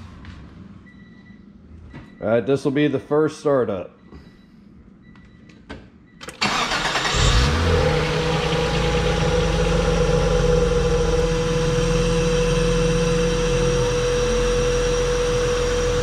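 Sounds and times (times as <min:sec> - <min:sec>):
ignition clicks: 0:06.2 - 0:07.6
car engine starting and idling: 0:06.2 - 0:16.0.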